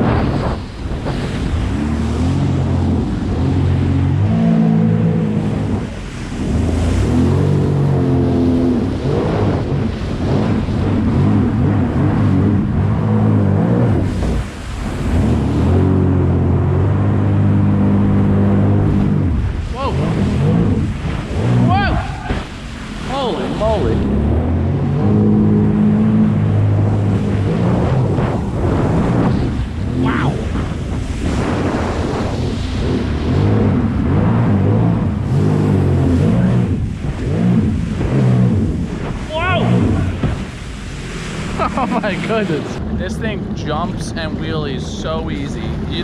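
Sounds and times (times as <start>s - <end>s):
jet ski engine revving: 0.0s - 46.0s
wind and water rushing: 0.0s - 46.0s.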